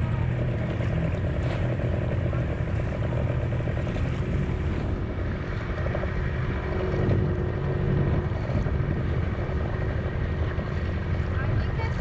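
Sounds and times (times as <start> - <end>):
motorboat engine running: 0.0 - 12.0
wind buffeting microphone: 0.0 - 12.0.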